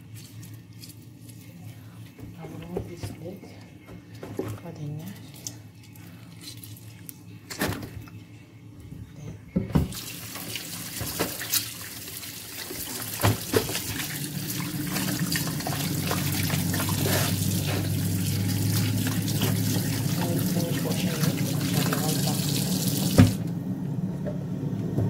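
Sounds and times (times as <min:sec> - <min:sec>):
tap water running into sink: 0:09.8 - 0:23.4.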